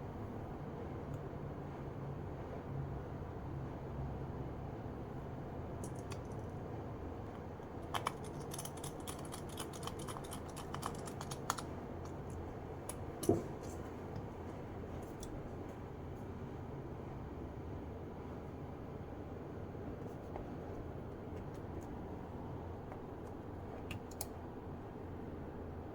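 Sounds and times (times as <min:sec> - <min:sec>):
steady low hum: 0:00.0 - 0:25.9
small laptop parts clicking: 0:05.8 - 0:06.5, 0:07.6 - 0:13.4, 0:23.8 - 0:24.4.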